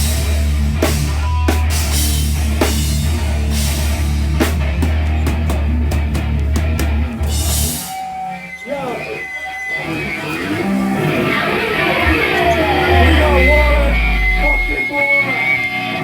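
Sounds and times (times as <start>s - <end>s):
heavy metal band playing: 0.0s - 16.0s
voices shouting: 8.3s - 15.6s
guitar notes: 8.5s - 16.0s
low bass note: 11.8s - 14.8s.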